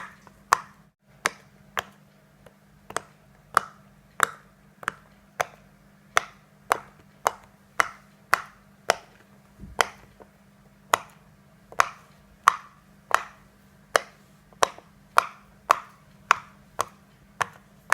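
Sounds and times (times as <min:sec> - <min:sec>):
fidget toy popping: 0:06.2 - 0:10.1.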